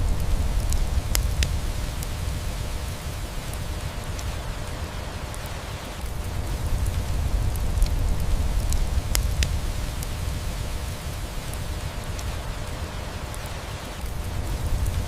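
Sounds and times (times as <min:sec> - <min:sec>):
low rumble: 0:00.0 - 0:02.8
fire pops: 0:00.0 - 0:15.0
rain hiss: 0:00.0 - 0:15.0
wood fire crackling: 0:00.0 - 0:15.0.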